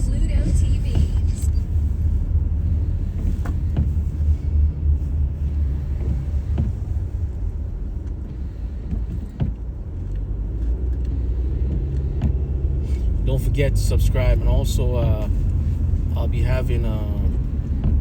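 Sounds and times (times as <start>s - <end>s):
engine and tyre rumble: 0.0s - 18.0s.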